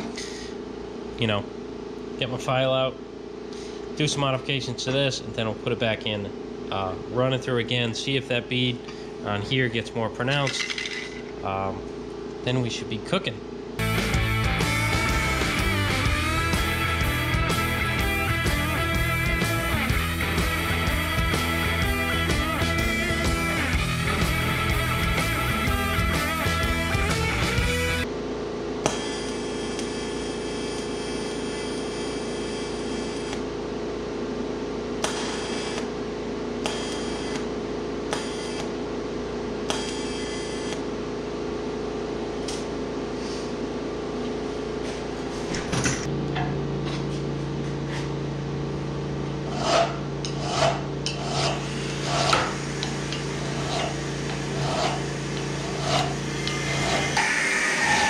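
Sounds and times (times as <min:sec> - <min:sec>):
steady hum: 0:00.0 - 0:58.0
hand file strokes on steel: 0:49.5 - 0:52.5, 0:53.4 - 0:57.2.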